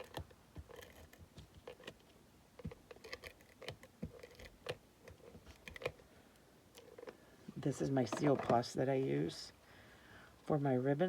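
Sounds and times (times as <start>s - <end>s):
paper and crafting tools clicking: 0.0s - 6.0s.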